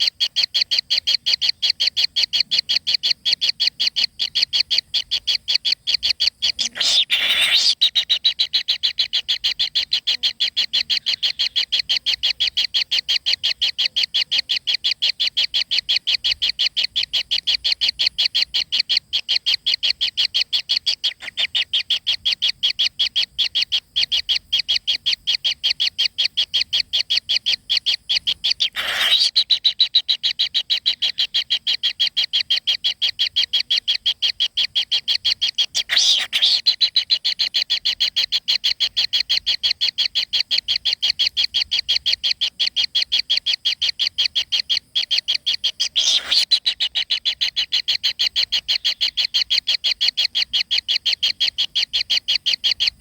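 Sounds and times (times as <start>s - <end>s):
bird chirping rapidly: 4.6s - 13.7s, 19.4s - 24.4s, 25.3s - 53.0s.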